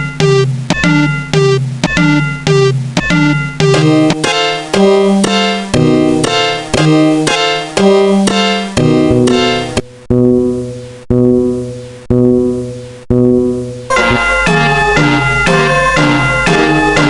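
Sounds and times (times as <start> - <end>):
piano-like keyboard melody: 0.0 - 9.8, 13.9 - 17.0.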